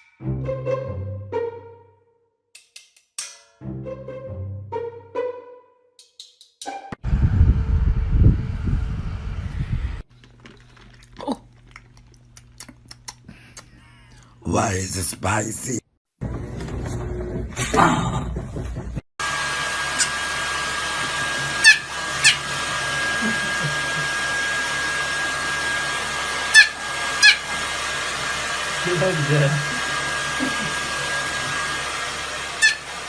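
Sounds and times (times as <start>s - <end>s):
electric motor high whine: 7.1s - 10.0s, 19.2s - 33.0s.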